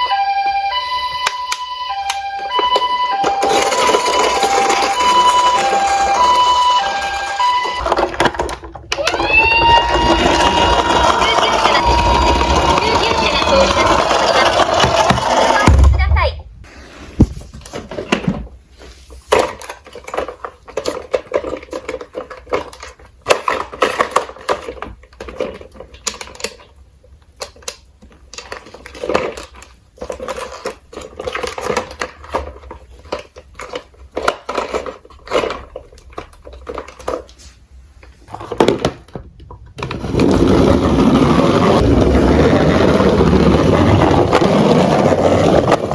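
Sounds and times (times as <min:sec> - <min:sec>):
toy cars rattling and clicking: 0:02.5 - 0:15.8, 0:19.2 - 0:37.5
loud steady rumbling: 0:08.9 - 0:16.4.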